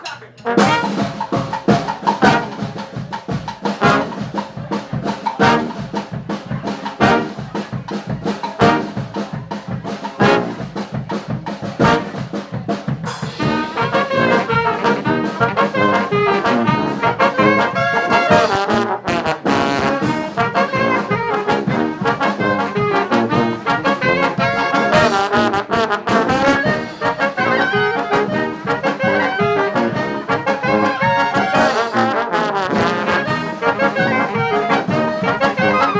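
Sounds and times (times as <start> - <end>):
drum beat: 0.0 - 35.9
brass horns playing: 0.3 - 4.5, 5.2 - 6.0, 6.9 - 7.6, 8.4 - 9.2, 10.1 - 10.8, 11.7 - 12.4, 13.2 - 35.9.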